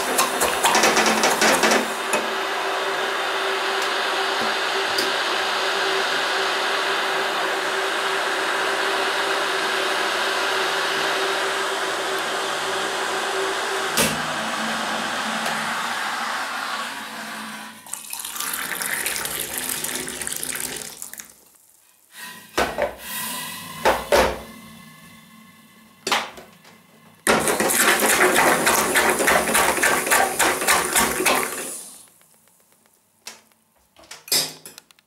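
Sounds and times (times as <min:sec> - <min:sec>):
water running from a tap: 0:17.8 - 0:21.5, 0:27.3 - 0:31.9.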